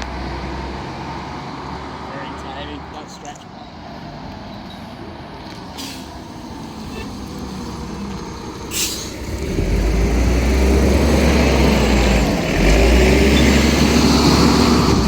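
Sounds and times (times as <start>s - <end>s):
diesel bus engine running: 4.8s - 15.0s
air brake hiss: 5.8s - 6.2s, 8.7s - 9.2s.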